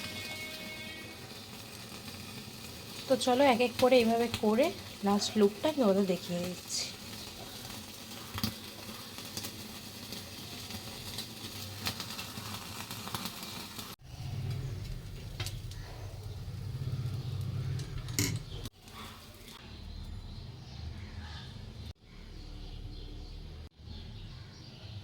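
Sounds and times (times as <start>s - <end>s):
gas burner flame: 0.1s - 19.6s
deep rumble: 14.0s - 18.7s.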